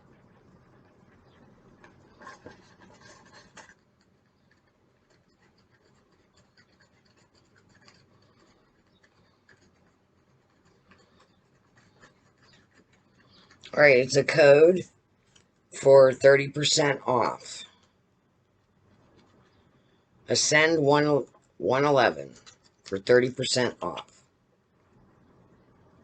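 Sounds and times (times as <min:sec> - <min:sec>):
scratch-off card scratching: 0:01.8 - 0:13.7.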